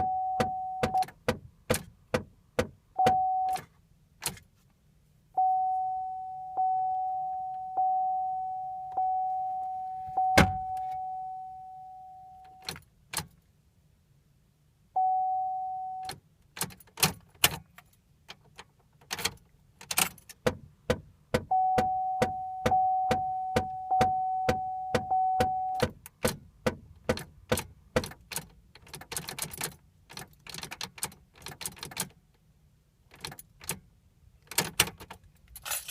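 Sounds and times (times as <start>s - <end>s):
car warning chime dinging: 0.0s - 1.2s, 2.9s - 3.6s, 5.4s - 12.7s, 15.0s - 16.1s, 21.4s - 26.0s
ignition clicks and key rattles: 0.0s - 4.5s, 8.9s - 11.2s, 12.4s - 13.4s, 16.0s - 35.9s.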